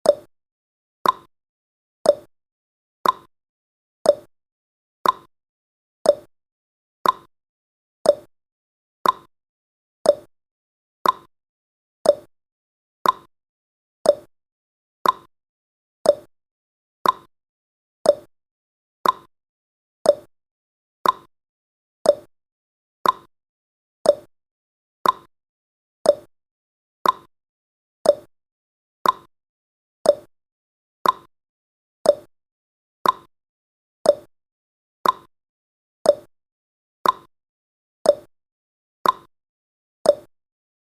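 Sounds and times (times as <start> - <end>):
timer ticking: 0.0 - 0.3, 1.0 - 1.3, 2.0 - 2.3, 3.0 - 3.3, 4.0 - 4.3, 5.0 - 5.3, 6.0 - 6.3, 7.0 - 7.3, 8.0 - 8.3, 9.0 - 9.3, 10.0 - 10.3, 11.0 - 11.3, 12.0 - 12.3, 13.0 - 13.3, 14.0 - 14.3, 15.0 - 15.3, 16.0 - 16.3, 17.0 - 17.3, 18.0 - 18.3, 19.0 - 19.3, 20.0 - 20.3, 21.0 - 21.3, 22.0 - 22.3, 23.0 - 23.3, 24.0 - 24.3, 25.0 - 25.3, 26.0 - 26.3, 27.0 - 27.3, 28.0 - 28.3, 29.0 - 29.3, 30.0 - 30.3, 31.0 - 31.3, 32.0 - 32.3, 33.0 - 33.3, 34.0 - 34.3, 35.0 - 35.3, 36.0 - 36.3, 37.0 - 37.3, 38.1 - 38.3, 39.0 - 39.3, 40.1 - 40.3.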